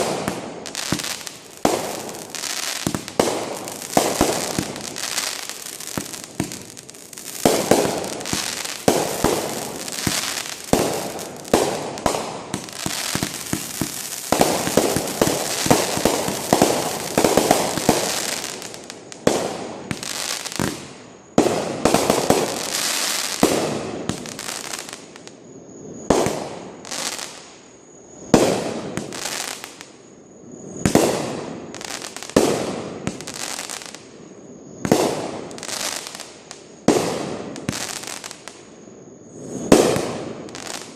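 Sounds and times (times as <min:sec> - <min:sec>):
fireworks bangs and crackle: 0:00.0 - 0:40.9.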